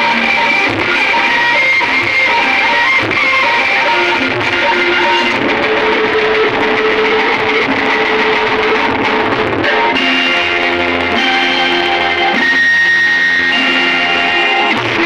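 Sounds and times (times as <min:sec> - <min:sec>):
guitar chords: 0:00.0 - 0:15.0.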